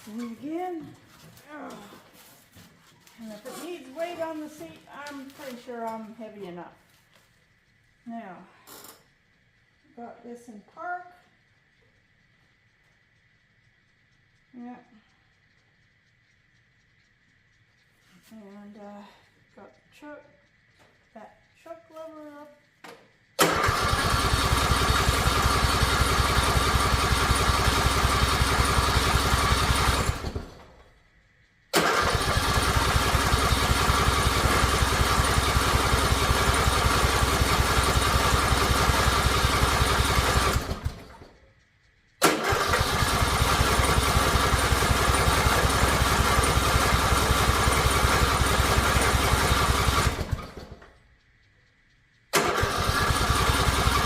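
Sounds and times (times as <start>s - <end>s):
lawn mower engine cranking: 23.4s - 31.0s, 31.7s - 41.4s, 42.2s - 51.0s, 52.3s - 54.0s.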